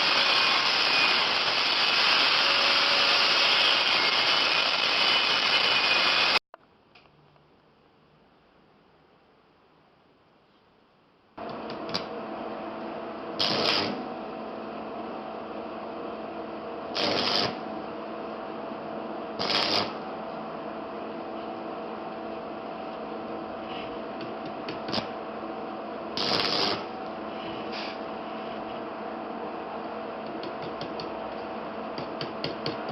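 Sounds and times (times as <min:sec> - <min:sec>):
electric power tool humming: 0:00.0 - 0:06.4.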